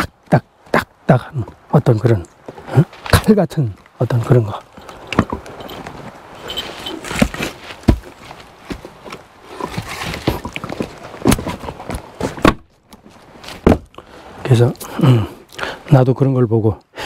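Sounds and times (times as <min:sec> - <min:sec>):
rustling: 0:02.4 - 0:13.9
wooden logs knocking: 0:04.2 - 0:06.2, 0:07.0 - 0:12.8, 0:13.5 - 0:14.0.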